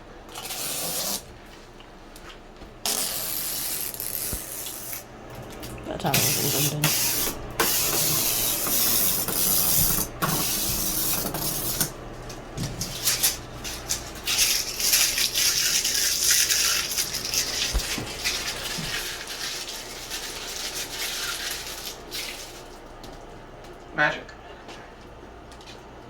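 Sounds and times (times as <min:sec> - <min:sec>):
plastic packaging rustling: 0:12.6 - 0:23.0.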